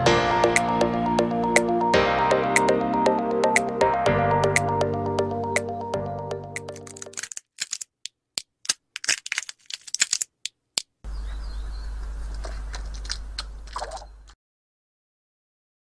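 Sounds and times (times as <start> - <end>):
sharp taps and cracks: 6.6 - 11.0.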